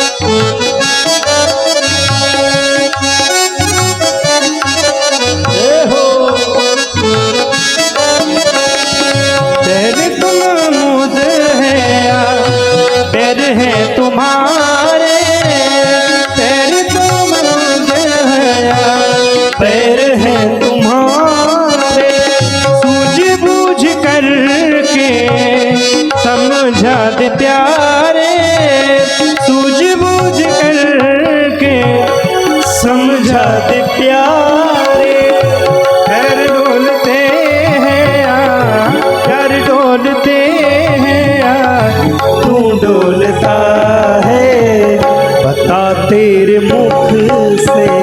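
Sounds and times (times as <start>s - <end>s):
harmonium drone: 0.0s - 48.0s
tabla rhythm: 0.0s - 48.0s
melody with sliding notes: 29.1s - 48.0s.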